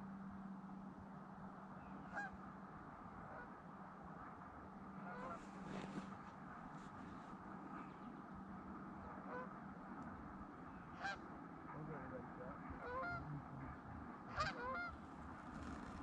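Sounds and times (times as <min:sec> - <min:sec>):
geese honking: 0:01.8 - 0:02.4, 0:05.0 - 0:07.8, 0:09.0 - 0:09.7, 0:10.7 - 0:16.0.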